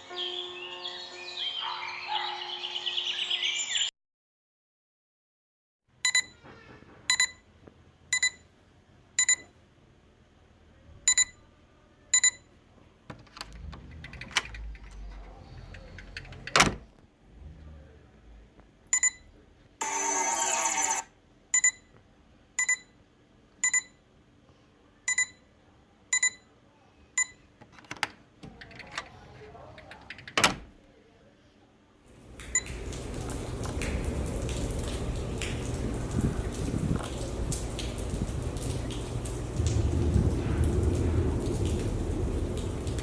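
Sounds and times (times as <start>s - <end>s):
short electronic beeps: 6.0s - 6.4s, 7.1s - 7.4s, 8.1s - 8.4s, 9.2s - 9.5s, 11.1s - 11.4s, 12.2s - 12.5s, 18.9s - 19.2s, 21.6s - 21.9s, 22.6s - 22.9s, 23.6s - 24.0s, 25.1s - 25.4s, 26.1s - 26.4s.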